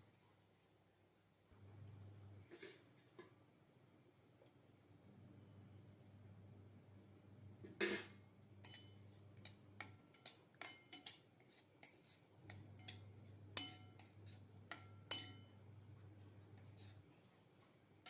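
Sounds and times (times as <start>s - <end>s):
faint low hum: 0.0s - 10.8s
metal spoon clinking on pan: 8.6s - 15.6s.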